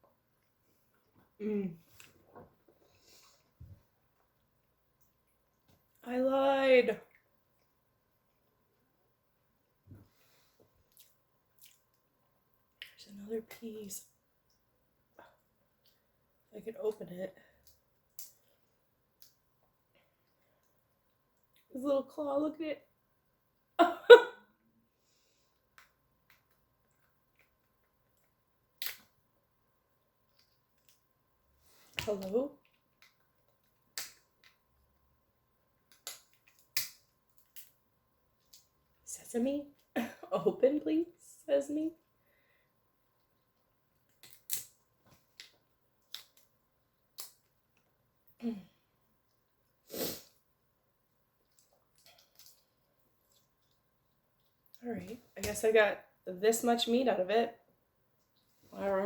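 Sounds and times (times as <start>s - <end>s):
crab shell cracking: 28.8s - 29.1s, 35.9s - 37.8s, 44.1s - 44.8s, 45.4s - 46.5s
breathy sniff: 49.8s - 50.4s.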